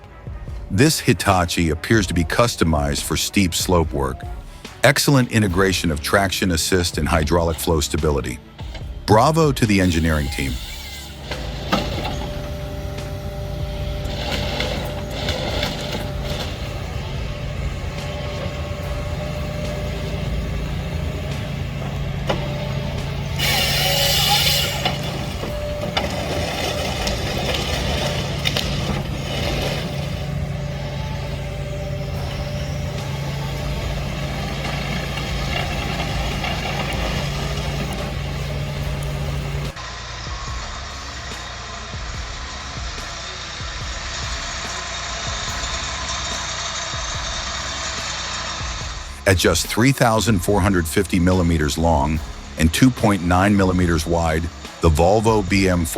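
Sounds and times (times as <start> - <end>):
heavy machine engine running: 0.2 - 55.9
loud hiss: 9.9 - 26.4
metal clanks: 10.2 - 39.8.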